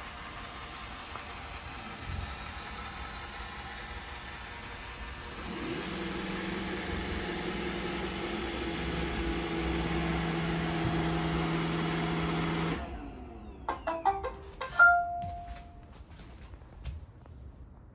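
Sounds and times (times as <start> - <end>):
robot vacuum motor and brush whir: 0.0 - 13.3.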